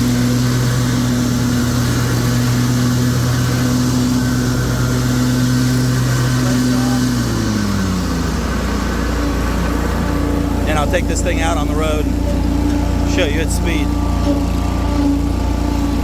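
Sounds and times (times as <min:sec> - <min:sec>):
mower engine running: 0:00.0 - 0:16.0.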